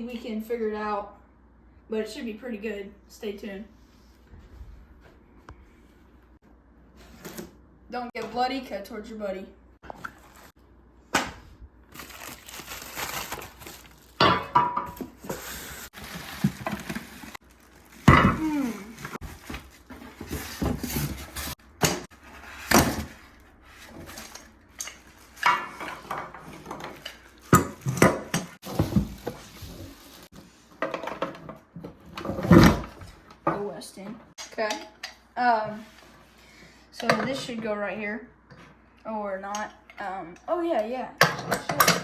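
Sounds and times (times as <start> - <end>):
packaging handling noise: 11.9 - 14.2, 15.0 - 22.2, 26.0 - 30.4
parts knocking and clattering: 30.7 - 33.7.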